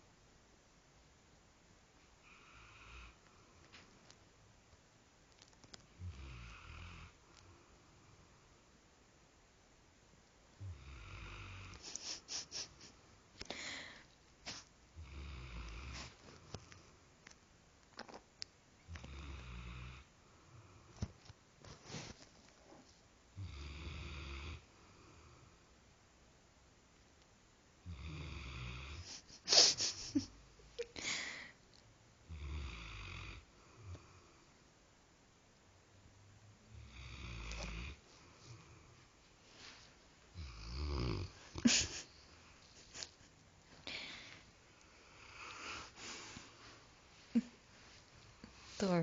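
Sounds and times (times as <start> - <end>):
puppy snoring: 2.2 - 3.6, 5.8 - 7.7, 10.6 - 12.8, 14.4 - 16.9, 18.8 - 21.0, 23.4 - 25.6, 27.8 - 30.2, 32.2 - 34.5, 36.7 - 39.1, 40.3 - 42.6, 44.8 - 46.6
short sharp sniffing: 14.4 - 14.7.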